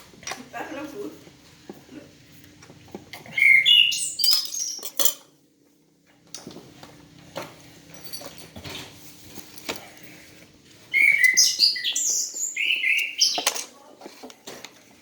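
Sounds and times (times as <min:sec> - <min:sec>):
bird chirping: 0:03.2 - 0:05.0, 0:10.8 - 0:13.6
light clinks and taps: 0:07.8 - 0:08.8.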